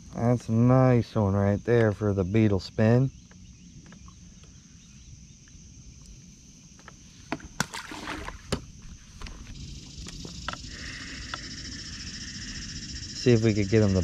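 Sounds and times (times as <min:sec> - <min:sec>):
high insect buzz: 0:00.0 - 0:14.0
low rumble of water and hull: 0:06.1 - 0:12.2.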